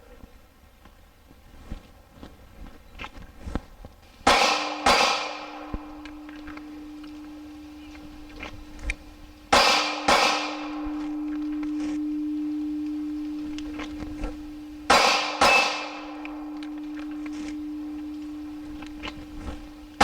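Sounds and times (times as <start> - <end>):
steel target ringing: 4.1 - 20.0
pistol shots: 4.2 - 5.7, 9.5 - 10.8, 14.9 - 16.0.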